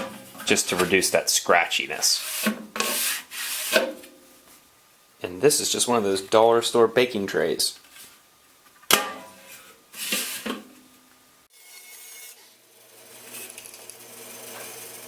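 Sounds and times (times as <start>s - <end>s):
metal tray scraping: 0.0s - 1.1s, 2.1s - 4.1s, 9.0s - 10.7s.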